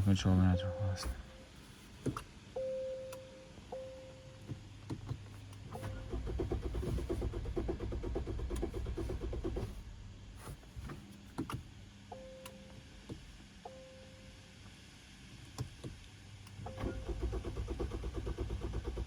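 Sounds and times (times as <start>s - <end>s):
dashboard warning chime: 0.0s - 1.6s, 2.5s - 4.4s, 12.1s - 12.8s, 13.7s - 14.3s
starter motor cranking engine: 5.7s - 9.8s, 16.8s - 19.0s.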